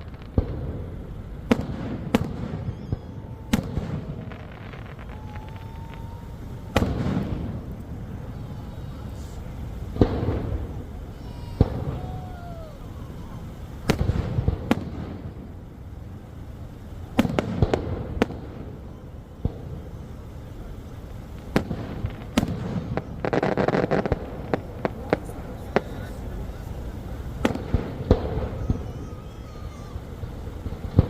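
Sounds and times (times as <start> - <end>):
fireworks bangs: 0.0 - 31.0
fireworks crackling: 0.0 - 31.0.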